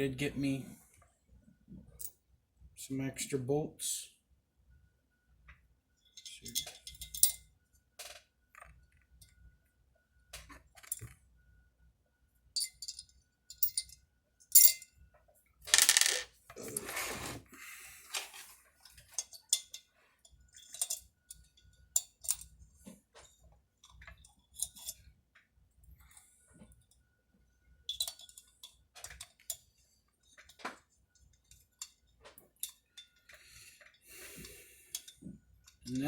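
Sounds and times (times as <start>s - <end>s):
bolts clinking against metal: 6.1s - 7.4s, 12.6s - 14.9s, 20.6s - 22.5s, 27.9s - 29.6s.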